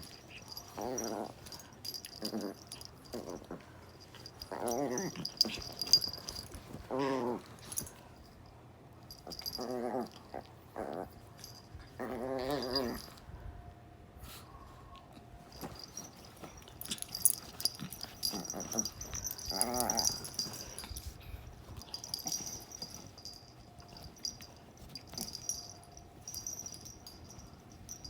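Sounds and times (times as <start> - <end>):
dogs growling: 0.0 - 7.9, 9.2 - 13.2, 16.9 - 21.1
dogs scuffling: 0.0 - 8.1, 15.5 - 28.0.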